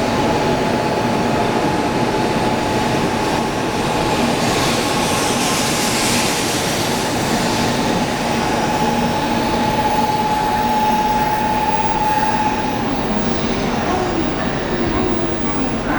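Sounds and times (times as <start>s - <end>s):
high-speed train rushing: 0.0s - 15.9s
thin level whine: 8.4s - 15.6s.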